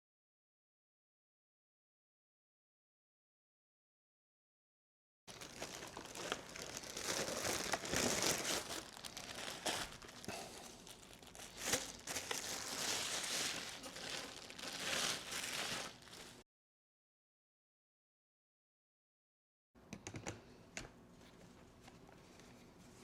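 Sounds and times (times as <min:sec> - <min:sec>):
plastic wrapping crinkling and tearing: 0:05.3 - 0:16.4.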